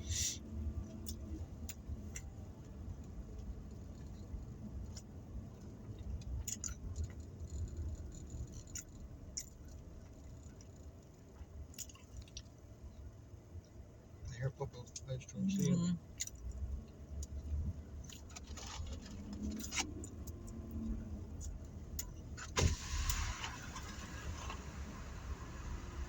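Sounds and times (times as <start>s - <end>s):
low rumble inside a car: 0.0s - 26.0s
soft clicks and ticks: 0.8s - 13.8s.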